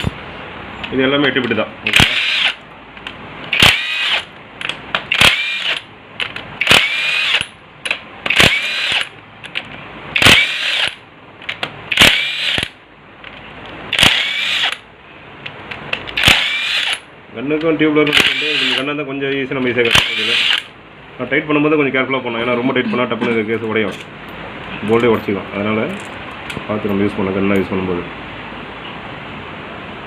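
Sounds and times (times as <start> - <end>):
power driver whirring: 1.9 - 2.6, 3.5 - 7.6, 8.3 - 12.8, 13.9 - 14.8, 16.0 - 17.0, 18.0 - 18.9, 19.8 - 20.7.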